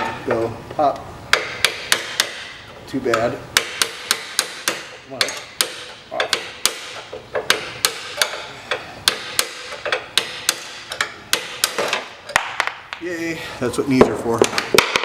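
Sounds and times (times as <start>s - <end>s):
hammer striking metal: 1.4s - 8.4s, 9.0s - 12.5s.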